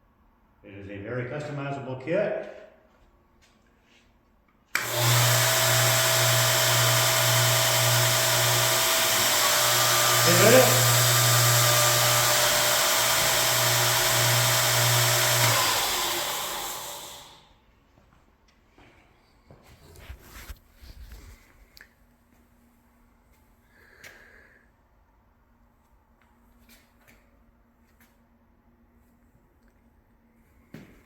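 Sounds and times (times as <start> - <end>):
belt grinder running: 4.8 - 17.4.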